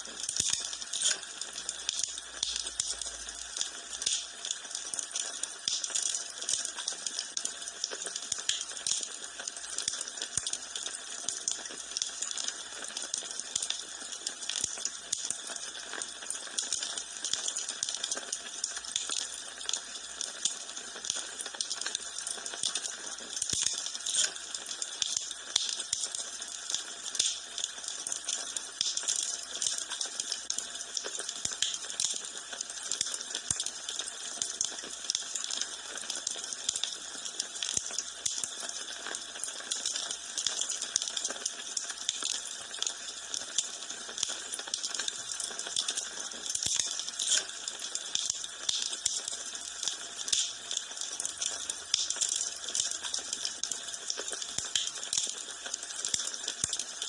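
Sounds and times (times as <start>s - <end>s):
wood fire crackling: 0.1s - 9.7s, 21.1s - 38.5s, 39.5s - 57.0s.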